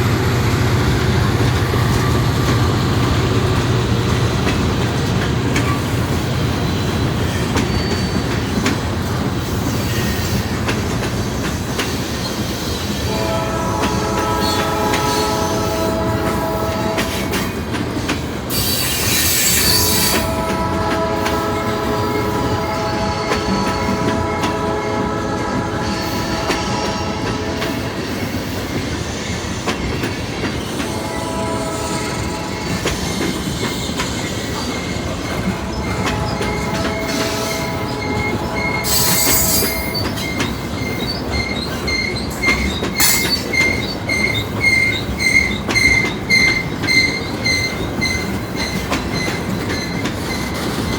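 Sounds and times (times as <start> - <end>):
diesel locomotives working hard: 0.0 - 50.9
rumble of train cars: 0.0 - 50.9
train air horn: 12.9 - 17.5, 18.5 - 28.1, 30.8 - 33.4, 35.3 - 40.2.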